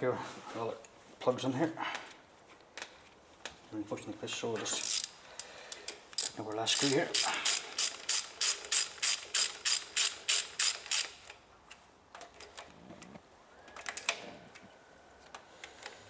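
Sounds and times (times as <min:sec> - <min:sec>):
ratchet wrench clicking: 0:04.7 - 0:11.3.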